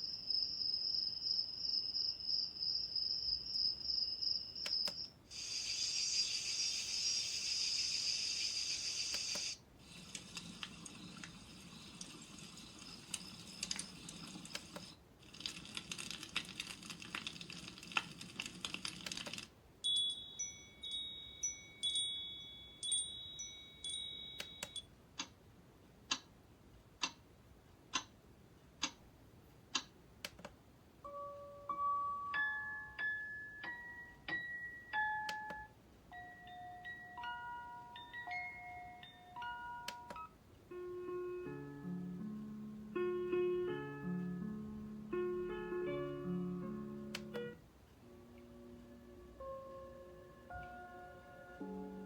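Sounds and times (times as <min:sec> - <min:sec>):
high steady chirping: 0:00.0 - 0:09.6, 0:19.8 - 0:24.8
tinkling chime-like tones: 0:19.8 - 0:24.9, 0:31.1 - 0:40.3.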